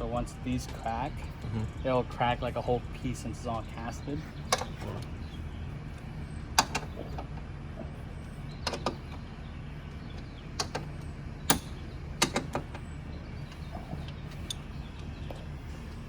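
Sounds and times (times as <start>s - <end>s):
steady low hum: 0.0s - 16.0s
hand tools clicking and knocking: 6.6s - 7.4s, 11.5s - 12.8s.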